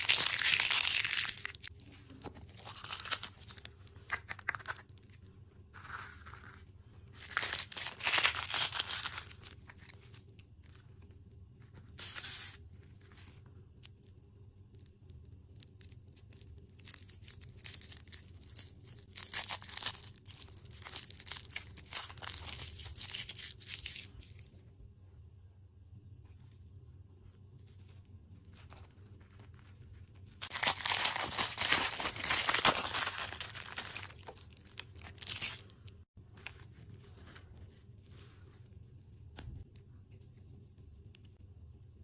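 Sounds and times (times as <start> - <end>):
plastic packaging crinkling and tearing: 0.0 - 5.2, 7.2 - 10.8, 15.6 - 24.5, 28.5 - 35.8.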